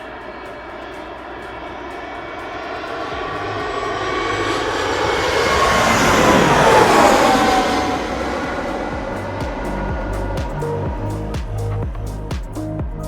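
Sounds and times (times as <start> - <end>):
jet engine whine dropping in pitch: 0.0 - 11.8
airliner engine noise: 0.0 - 12.8.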